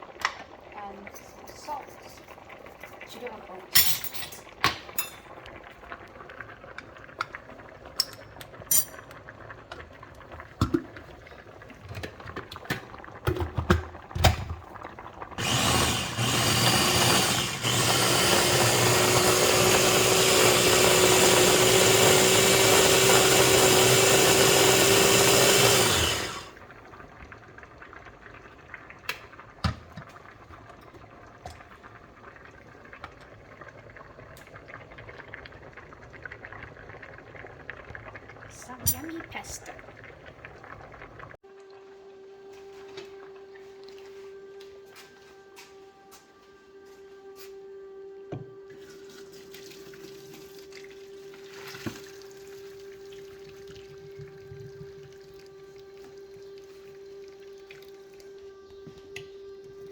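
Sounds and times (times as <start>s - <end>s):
electric blender grinding: 15.4s - 26.6s.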